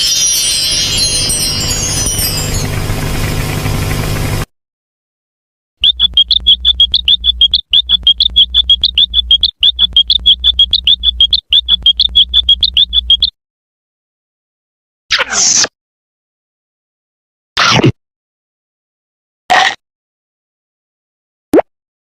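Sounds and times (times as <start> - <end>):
cartoon high-pitched chirps: 5.8 - 13.3
low hum: 5.8 - 13.3.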